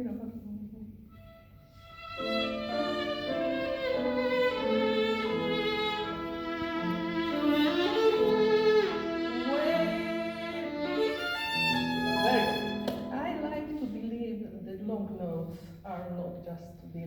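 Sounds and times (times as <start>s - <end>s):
solo violin with vibrato: 1.2s - 13.1s.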